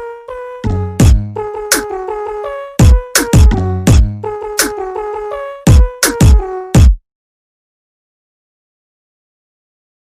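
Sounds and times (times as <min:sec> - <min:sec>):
synth melody: 0:00.0 - 0:06.8
pitch-dropping kick drum: 0:00.6 - 0:01.9, 0:02.8 - 0:04.7, 0:05.7 - 0:07.0.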